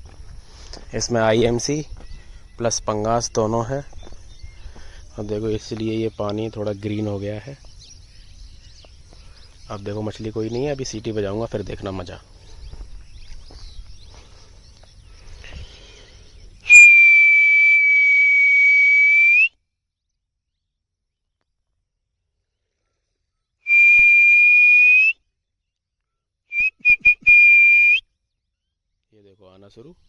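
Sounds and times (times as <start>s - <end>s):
person whistling long whistles: 16.6s - 19.6s, 23.6s - 25.2s, 26.5s - 28.0s.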